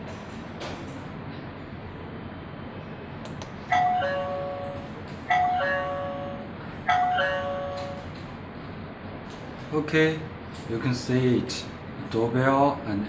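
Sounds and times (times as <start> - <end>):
doorbell ding-dong chime: 3.7 - 8.1.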